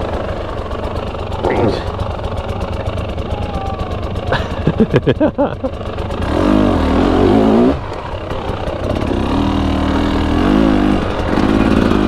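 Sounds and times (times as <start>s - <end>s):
dirt bike engine revving: 0.0s - 12.0s.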